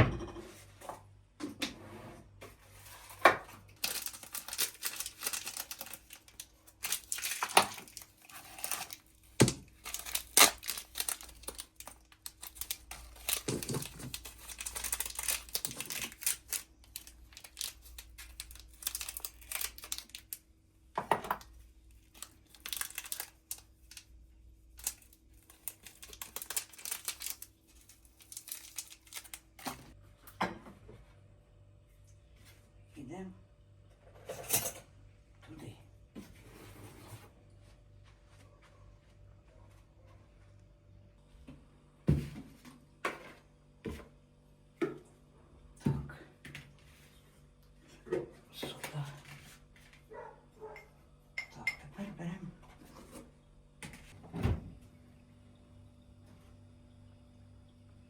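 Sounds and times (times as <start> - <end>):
packaging crinkling and tearing: 3.6 - 20.5, 21.4 - 30.0.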